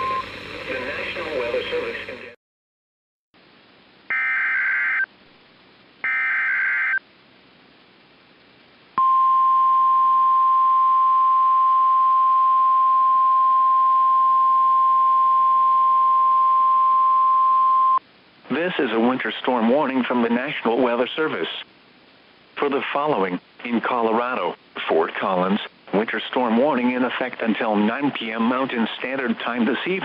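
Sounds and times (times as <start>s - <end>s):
warbling data tones: 6.0s - 7.0s.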